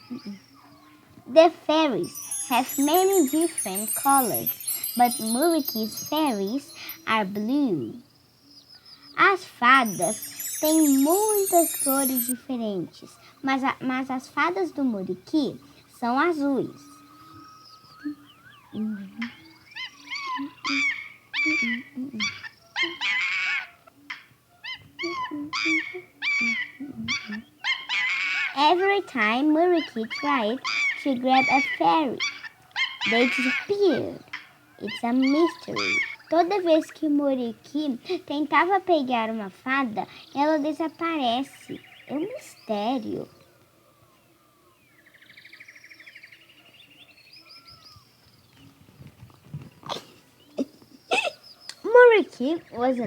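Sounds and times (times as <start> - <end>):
animal yelps and squeals: 16.8 - 28.6, 29.8 - 34.6.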